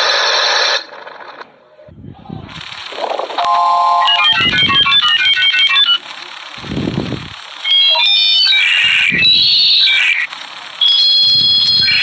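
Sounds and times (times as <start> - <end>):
dial-up modem beeps and screeching: 3.4 - 6.0, 7.6 - 12.0.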